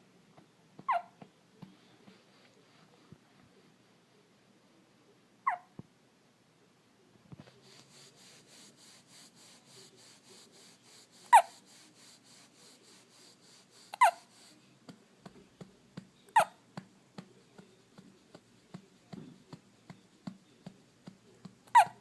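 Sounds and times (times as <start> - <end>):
baby hiccuping: 0.8 - 1.2.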